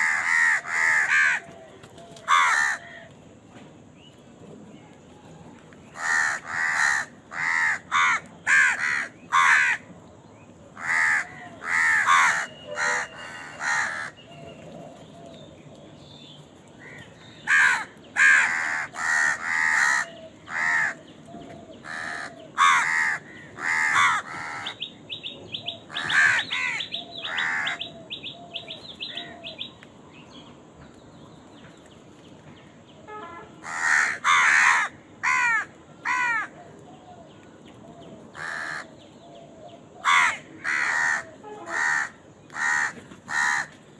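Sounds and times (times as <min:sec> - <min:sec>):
crows cawing: 0:00.0 - 0:03.1, 0:06.0 - 0:09.9, 0:10.8 - 0:14.2, 0:16.8 - 0:21.0, 0:21.6 - 0:24.8, 0:25.9 - 0:27.9, 0:33.6 - 0:36.7, 0:38.3 - 0:39.0, 0:40.0 - 0:43.9.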